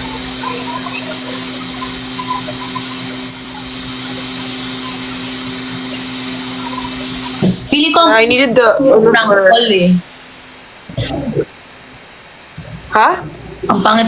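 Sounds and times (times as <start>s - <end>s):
small motor humming: 0.0s - 7.7s
short high-pitched beep: 1.8s - 3.8s.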